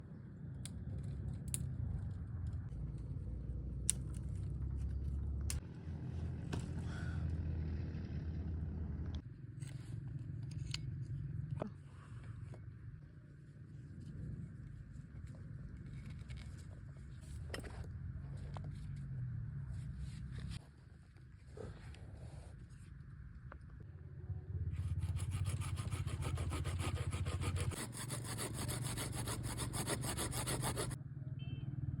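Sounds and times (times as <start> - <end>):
saw cutting wood: 24.8 - 31.0.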